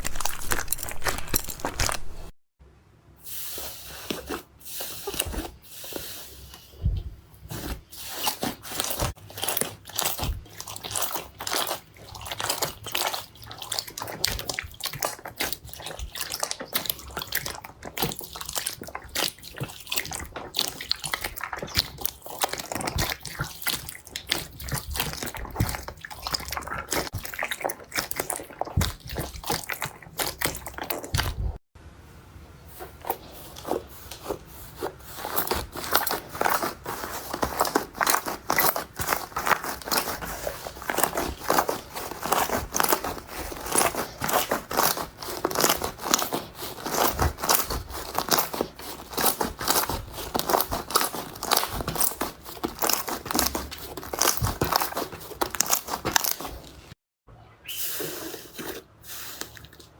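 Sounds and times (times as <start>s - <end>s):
slime crackling and popping: 0.0s - 2.3s, 8.2s - 31.5s, 35.2s - 56.9s.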